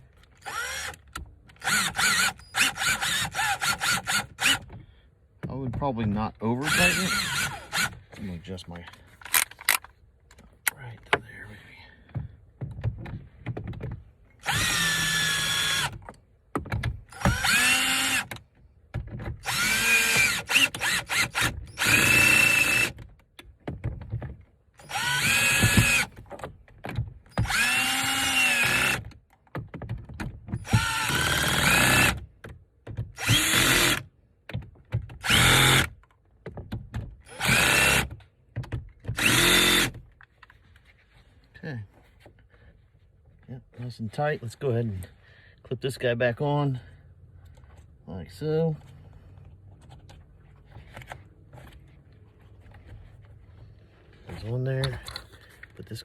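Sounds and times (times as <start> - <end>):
power drill motor whine: 0.4 - 1.0, 1.6 - 4.7, 6.6 - 8.0, 14.4 - 16.0, 17.1 - 18.3, 19.4 - 23.0, 24.8 - 26.1, 27.4 - 29.0, 30.6 - 32.2, 33.2 - 34.0, 35.2 - 35.9, 37.3 - 38.1, 39.2 - 39.9.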